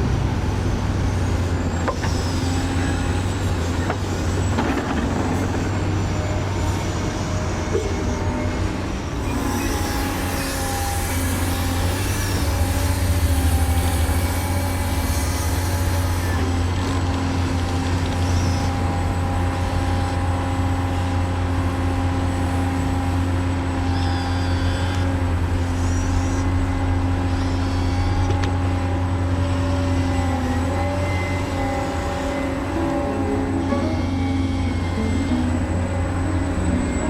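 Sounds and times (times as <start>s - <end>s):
toy truck motor whining: 9.2s - 17.2s, 23.8s - 37.0s.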